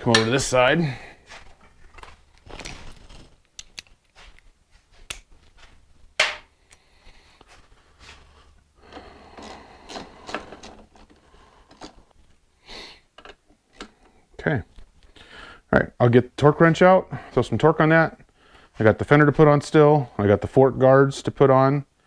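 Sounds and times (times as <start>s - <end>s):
hand tools clicking and knocking: 0.0s - 0.6s, 6.2s - 6.8s, 8.8s - 12.1s.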